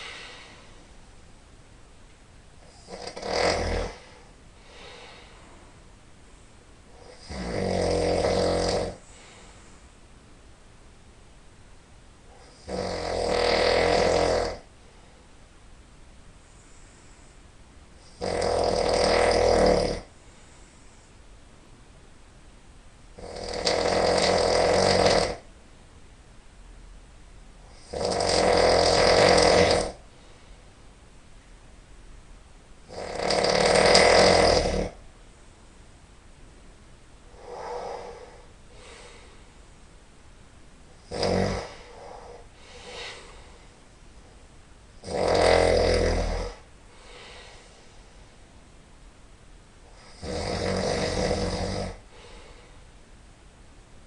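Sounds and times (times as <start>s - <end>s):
faint breath: 0.0s - 0.9s, 4.0s - 6.6s, 9.0s - 10.1s, 16.4s - 17.6s, 20.1s - 21.4s, 30.0s - 30.9s, 37.3s - 39.7s, 41.6s - 44.0s, 46.8s - 48.5s, 52.0s - 53.0s
person snoring loudly: 2.6s - 5.0s, 7.0s - 9.0s, 12.4s - 14.7s, 18.0s - 20.1s, 23.2s - 25.5s, 27.7s - 30.0s, 32.9s - 35.0s, 37.3s - 39.2s, 41.0s - 43.4s, 45.0s - 47.7s, 49.9s - 52.5s.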